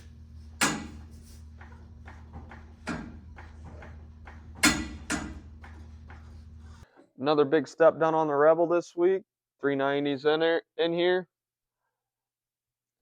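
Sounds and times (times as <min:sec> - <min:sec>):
low hum: 0:00.0 - 0:06.8
knocks and clunks: 0:00.5 - 0:07.1.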